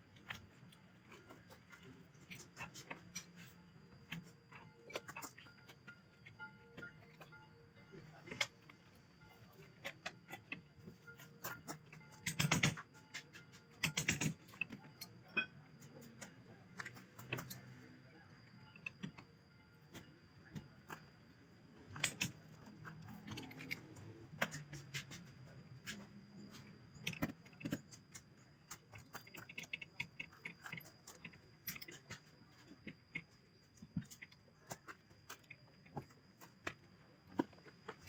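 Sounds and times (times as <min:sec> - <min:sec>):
tools and metal parts clinking: 0:08.2 - 0:17.8, 0:21.9 - 0:33.0.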